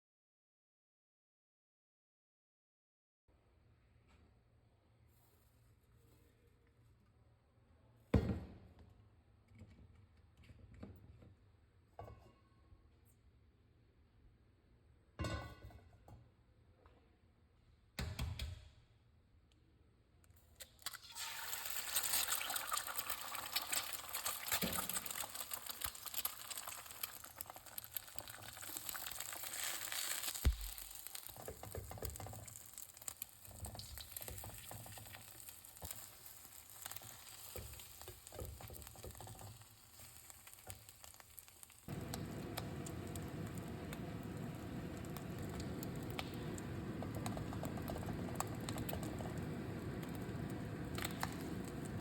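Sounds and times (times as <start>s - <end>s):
food sizzling in a wok: 21.1s - 52.0s
stirring in a wok: 22.3s - 42.0s.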